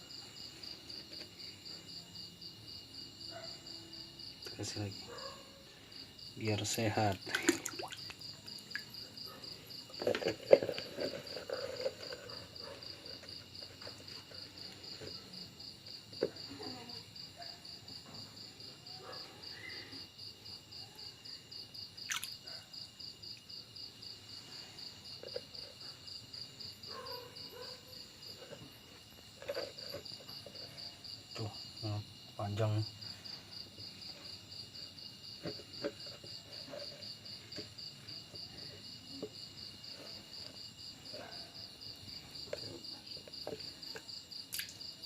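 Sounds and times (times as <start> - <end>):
high insect trill: 0.0 - 45.0
fish splashing in water: 7.2 - 8.9, 22.1 - 22.4.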